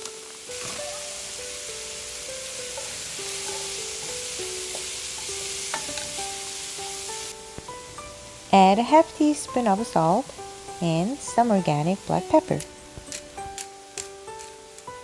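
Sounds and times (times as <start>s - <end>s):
food sizzling in frying pan: 0.0s - 15.0s
gentle background music: 0.0s - 15.0s.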